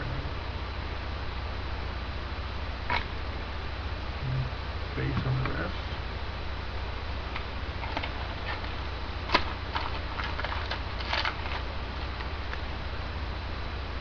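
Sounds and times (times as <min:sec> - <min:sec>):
low hum: 0:00.0 - 0:14.0
trading cards clicking and rustling: 0:07.4 - 0:12.6.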